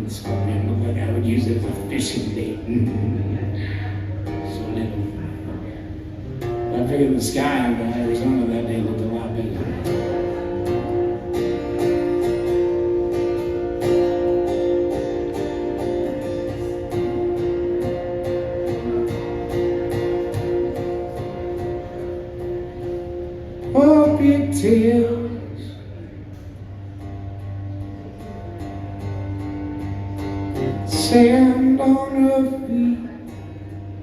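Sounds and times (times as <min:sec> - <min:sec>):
acoustic guitar strumming: 0:00.0 - 0:34.0
person singing: 0:30.6 - 0:33.4.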